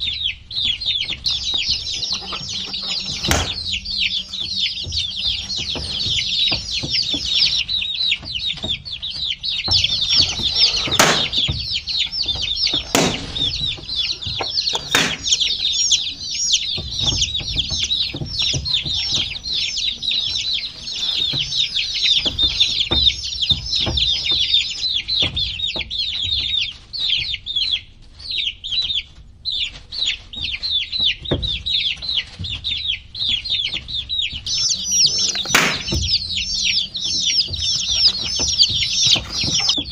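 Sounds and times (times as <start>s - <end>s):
baby chicks peeping: 0.0s - 39.9s
sharp knocks: 1.2s - 7.7s, 9.6s - 25.4s, 34.5s - 39.9s.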